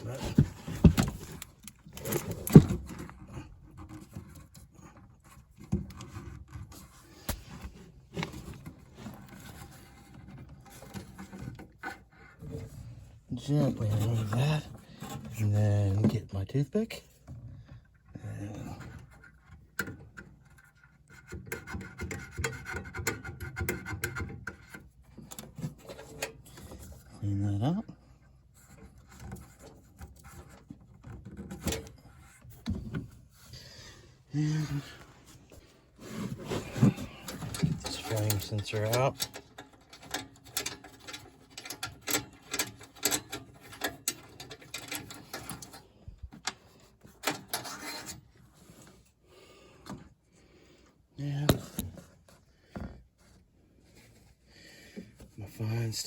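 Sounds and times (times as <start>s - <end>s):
tools clicking and rattling: 36.7s - 45.8s.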